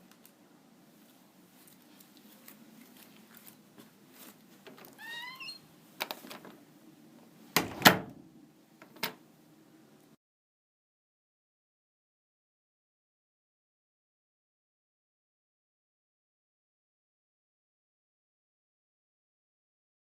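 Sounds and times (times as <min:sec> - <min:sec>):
door squeaking: 0:04.7 - 0:05.7
door thudding: 0:07.6 - 0:08.2.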